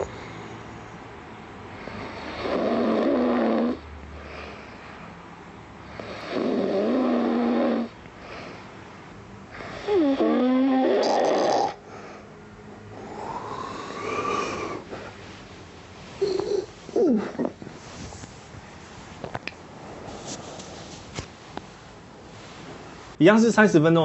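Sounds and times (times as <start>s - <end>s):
man snoring: 1.8s - 3.8s, 5.9s - 8.0s, 9.5s - 11.8s, 12.9s - 15.0s
quiet breathing: 4.0s - 6.3s, 11.8s - 15.5s.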